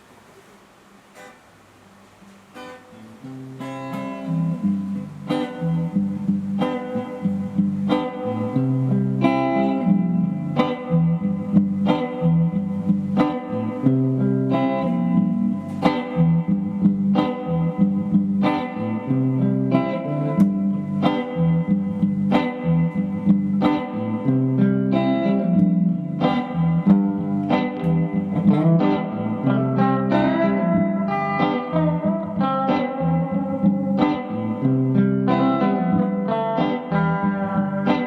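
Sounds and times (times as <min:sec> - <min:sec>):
electric guitar notes and chords: 0:02.5 - 0:38.0.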